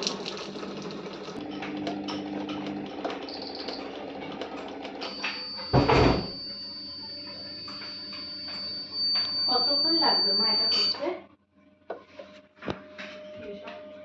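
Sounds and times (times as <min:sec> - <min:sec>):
high-pitched electronic beep: 0:03.3 - 0:03.8, 0:05.0 - 0:11.0.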